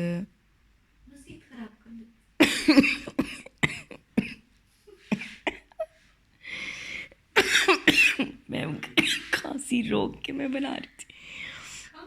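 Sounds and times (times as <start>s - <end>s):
woman coughing: 2.4s - 6.0s, 7.4s - 9.5s.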